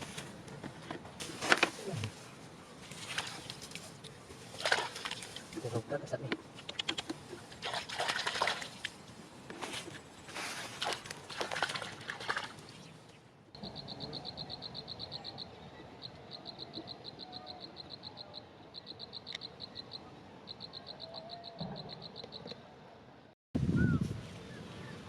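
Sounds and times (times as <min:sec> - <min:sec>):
small animal chirping trill: 0:13.6 - 0:22.5.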